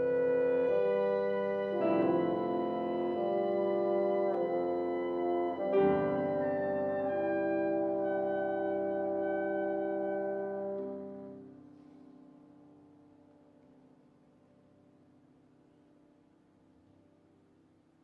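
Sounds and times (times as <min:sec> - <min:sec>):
chamber ensemble playing chords: 0:00.0 - 0:12.0.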